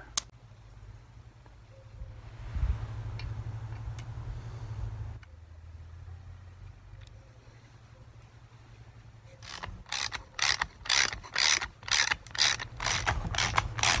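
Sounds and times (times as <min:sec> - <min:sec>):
ratchet wrench clicking: 0:09.4 - 0:14.0.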